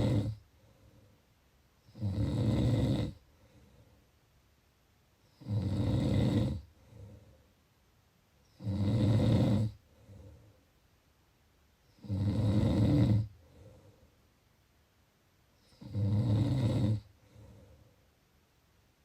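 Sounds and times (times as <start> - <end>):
person snoring: 0.0 - 0.4, 1.9 - 3.2, 5.3 - 7.1, 8.5 - 10.2, 12.0 - 13.8, 15.6 - 17.7
quiet breath: 0.0 - 4.5, 5.2 - 8.7, 9.4 - 10.9, 11.8 - 14.5, 16.7 - 18.5.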